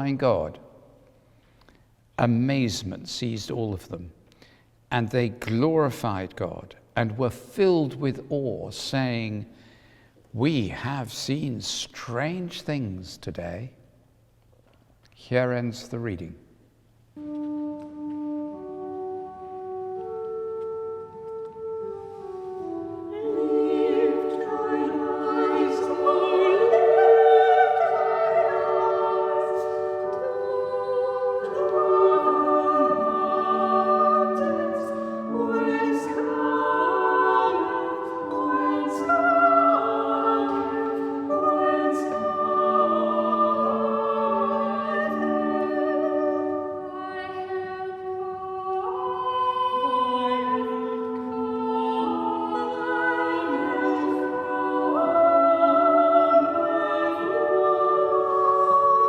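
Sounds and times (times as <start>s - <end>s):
choir singing: 22.1s - 59.0s.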